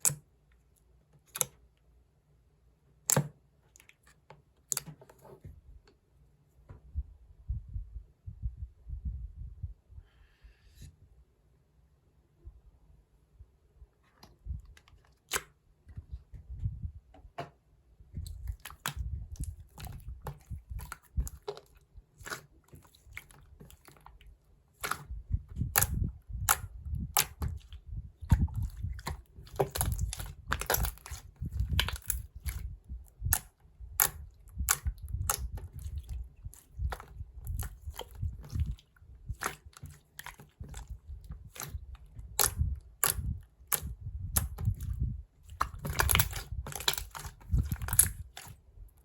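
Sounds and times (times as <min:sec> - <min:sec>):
chewing crunchy food: 0:18.2 - 0:49.0.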